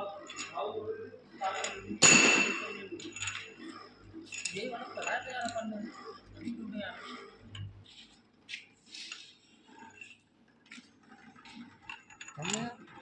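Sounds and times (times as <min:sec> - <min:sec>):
metal tools clinking: 0:00.3 - 0:00.6, 0:01.4 - 0:03.6, 0:04.2 - 0:05.6, 0:11.9 - 0:12.8.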